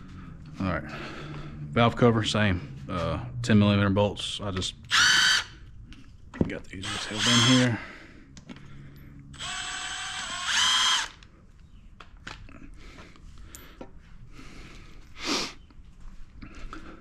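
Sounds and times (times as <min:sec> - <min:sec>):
power driver motor spinning: 0:04.8 - 0:05.6, 0:06.8 - 0:07.8, 0:09.3 - 0:11.3.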